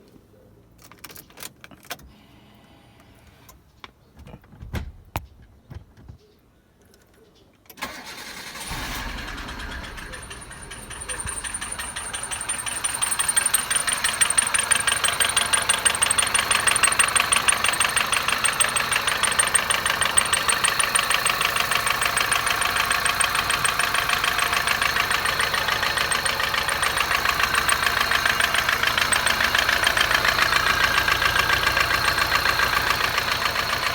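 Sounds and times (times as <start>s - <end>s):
car engine starting and idling: 7.8s - 33.9s
engine ticking: 7.8s - 33.9s
clicks: 9.0s - 33.0s.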